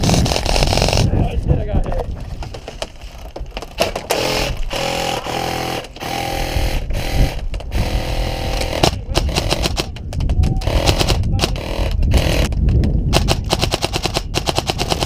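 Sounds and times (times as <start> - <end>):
airsoft gun firing full-auto: 10.7 - 12.4, 13.1 - 15.0.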